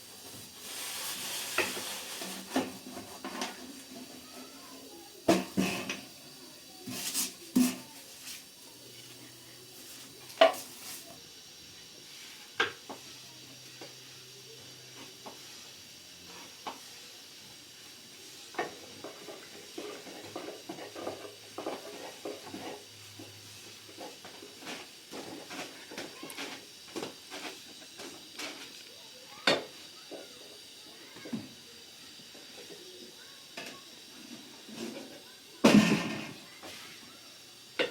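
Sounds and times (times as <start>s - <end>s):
utensils scraping and tapping: 1.1s - 4.5s, 5.3s - 6.2s, 6.8s - 9.2s, 9.9s - 11.1s, 18.5s - 28.9s.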